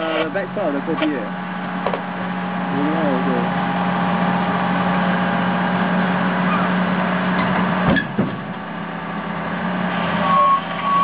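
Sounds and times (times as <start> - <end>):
excavator diesel engine running: 0.0 - 11.0
heavy knocks: 7.4 - 8.7.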